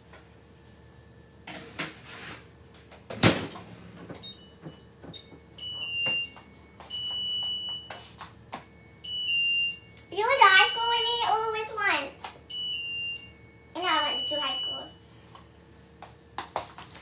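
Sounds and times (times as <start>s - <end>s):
high electronic beeps: 4.2s - 8.0s, 8.6s - 15.0s.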